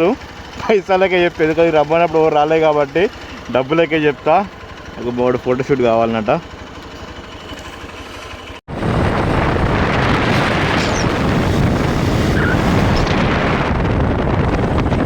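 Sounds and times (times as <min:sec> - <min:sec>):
motorcycle engine idling: 0:00.0 - 0:08.7
motorcycle riding: 0:00.0 - 0:15.0
wind noise on microphone: 0:08.7 - 0:15.0.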